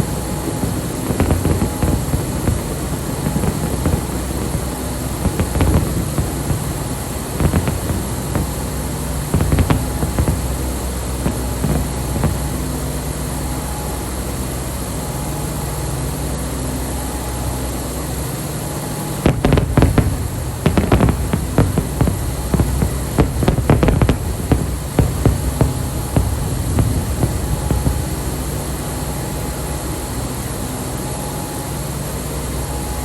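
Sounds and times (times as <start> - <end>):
low rumble: 0.0 - 12.8, 19.3 - 29.6
fireworks bangs and cracks: 0.0 - 13.5, 18.8 - 30.3.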